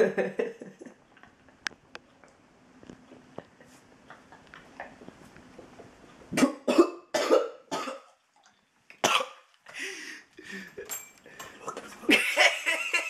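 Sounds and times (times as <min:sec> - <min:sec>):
person coughing hard: 0:06.4 - 0:08.0, 0:09.0 - 0:09.4.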